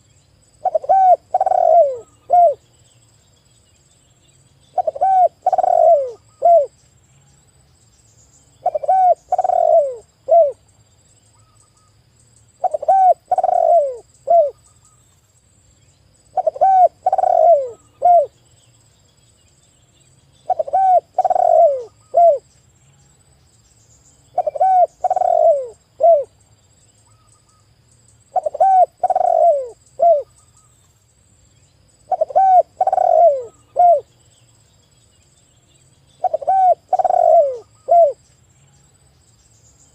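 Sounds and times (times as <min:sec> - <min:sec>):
dove cooing: 0:00.6 - 0:02.6, 0:04.7 - 0:06.7, 0:08.6 - 0:10.6, 0:12.6 - 0:14.6, 0:16.3 - 0:18.4, 0:20.4 - 0:22.5, 0:24.3 - 0:26.4, 0:28.3 - 0:30.3, 0:32.1 - 0:34.1, 0:36.2 - 0:38.2.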